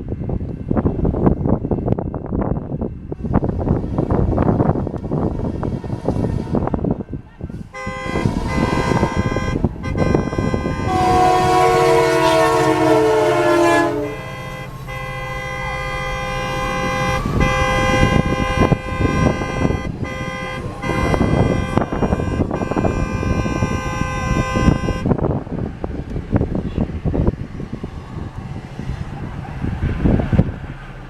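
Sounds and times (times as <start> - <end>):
locomotive horn blast: 5.6 - 25.4.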